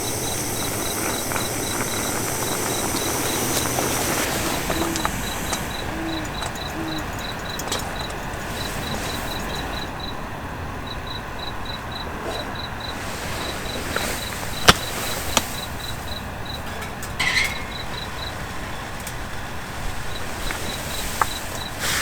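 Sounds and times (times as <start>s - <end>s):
cricket chirping: 0.0s - 22.0s
steady hiss: 0.0s - 22.0s
sharp cracks: 14.4s - 15.8s.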